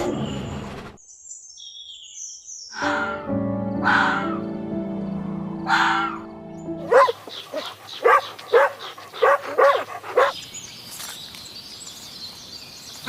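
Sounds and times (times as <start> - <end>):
dog barking: 3.8 - 4.4, 5.7 - 6.2, 6.8 - 10.4.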